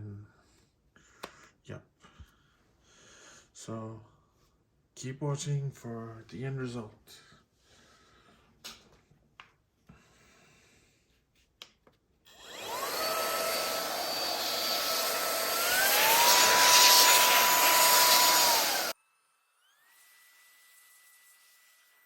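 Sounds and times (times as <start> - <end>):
handheld vacuum whirring: 12.3 - 19.0.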